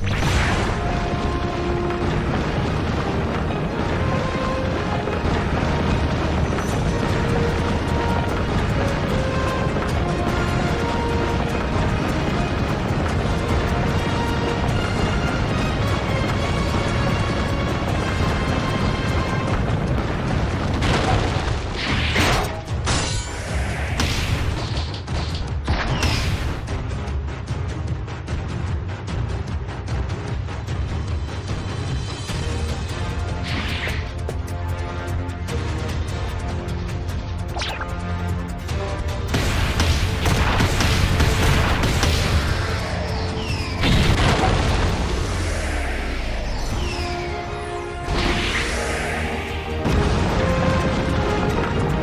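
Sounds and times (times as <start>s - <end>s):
heavy explosion rumble: 0.0s - 22.1s, 38.8s - 52.0s
music: 0.0s - 52.0s.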